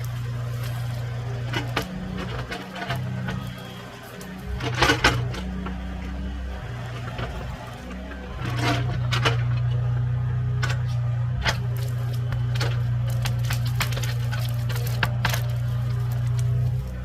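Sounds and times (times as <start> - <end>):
wood cracking and snapping: 0.0 - 6.1, 10.6 - 17.0
engine running steadily: 0.0 - 17.0.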